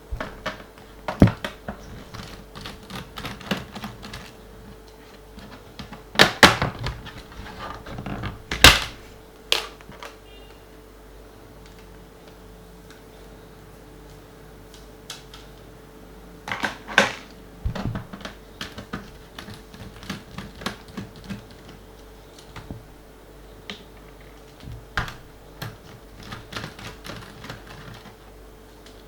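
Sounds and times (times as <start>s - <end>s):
faint steady hum: 0.0s - 29.0s
clicks and knocks of plastic case: 0.1s - 4.4s, 5.2s - 10.2s, 16.5s - 23.0s, 23.7s - 28.2s.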